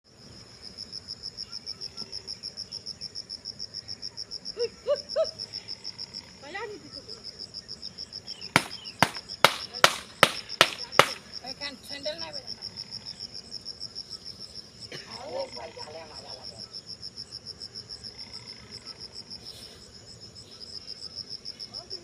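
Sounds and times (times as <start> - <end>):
insect trilling: 0.9 - 22.0
sharp loud knocks: 8.6 - 11.2.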